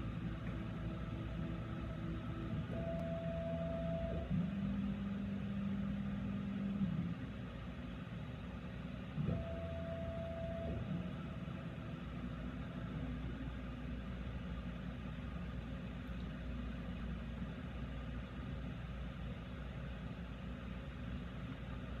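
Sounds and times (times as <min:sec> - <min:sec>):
machine motors whining: 0:00.0 - 0:07.2, 0:09.2 - 0:13.6
low machine hum: 0:00.0 - 0:22.0.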